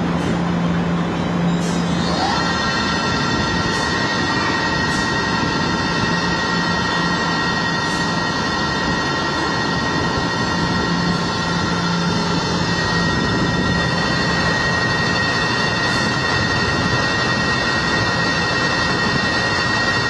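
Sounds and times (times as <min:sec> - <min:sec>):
high-pitched machine whines: 0:00.0 - 0:20.0
drilling machine running: 0:01.7 - 0:20.0.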